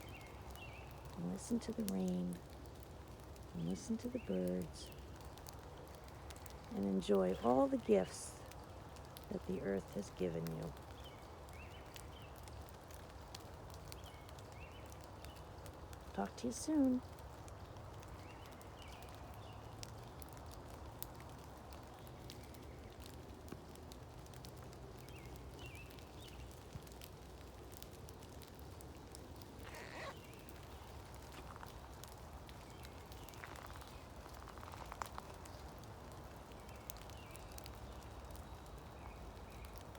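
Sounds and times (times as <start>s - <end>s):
soft rain hiss: 0.0s - 39.9s
water drips ticking: 30.2s - 39.9s.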